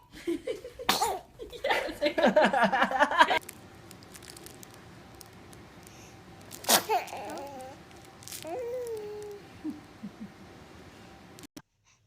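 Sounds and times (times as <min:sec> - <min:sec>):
baby cooing: 0:06.7 - 0:07.8, 0:08.4 - 0:09.8.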